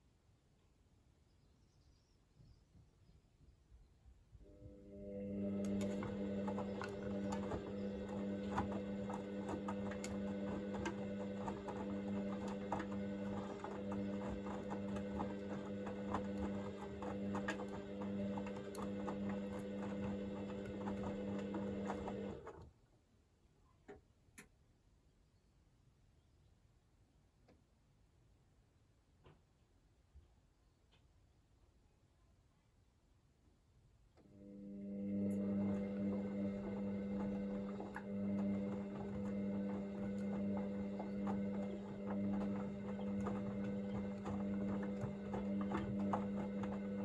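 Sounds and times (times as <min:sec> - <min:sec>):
washing machine motor hum: 0:04.4 - 0:22.7, 0:34.2 - 0:47.0
clicks from laundry and drum: 0:35.3 - 0:47.0.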